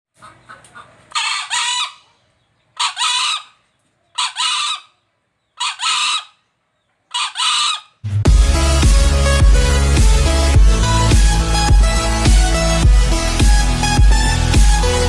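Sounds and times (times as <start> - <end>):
junglefowl crowing: 0.2 - 2.2, 2.8 - 6.4, 7.1 - 8.0.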